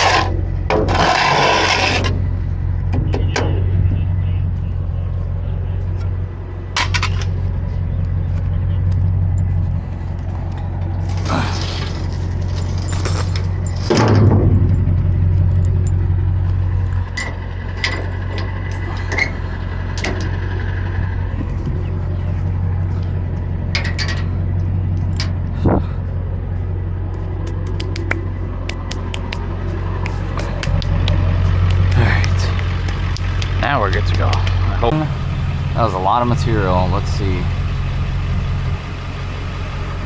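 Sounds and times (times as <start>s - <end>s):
knocks and scrapes: 0.0s - 2.3s, 9.4s - 20.6s, 27.2s - 33.6s
truck engine idling: 0.0s - 40.0s.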